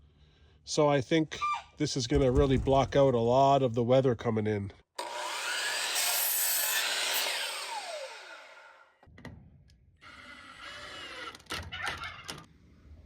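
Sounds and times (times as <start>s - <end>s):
sharp knocks: 2.2s - 3.4s
saw blade winding down: 5.0s - 8.9s
power saw cutting wood: 5.0s - 9.0s.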